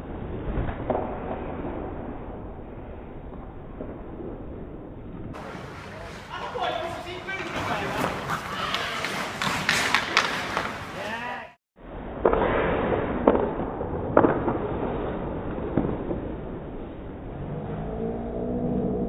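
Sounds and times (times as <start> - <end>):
voices in rink: 5.4 - 11.6
sticks striking puck: 6.4 - 11.2
puck hitting boards: 7.3 - 11.1, 12.2 - 14.7.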